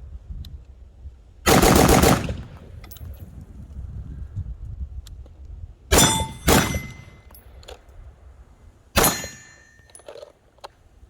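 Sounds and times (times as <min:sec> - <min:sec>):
gunshots: 0:01.5 - 0:02.7, 0:05.9 - 0:07.2, 0:09.0 - 0:09.6
metallic ring: 0:05.9 - 0:07.6, 0:09.0 - 0:10.2.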